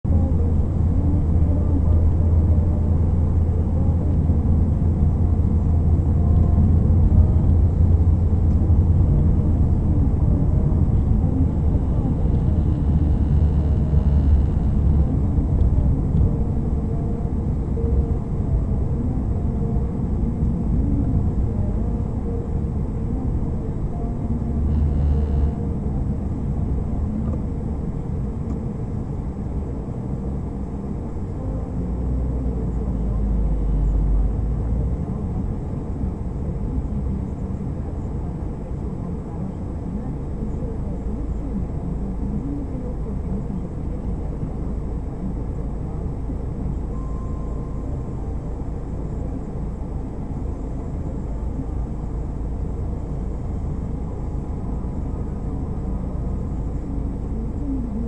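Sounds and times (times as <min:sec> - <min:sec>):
car engine and tyre rumble: 0:00.0 - 0:58.0.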